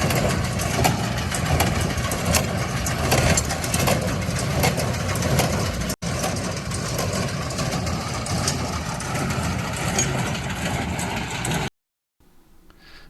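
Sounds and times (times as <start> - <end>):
baler clicks and knocks: 0.0 - 11.7
tractor engine running: 0.0 - 12.7.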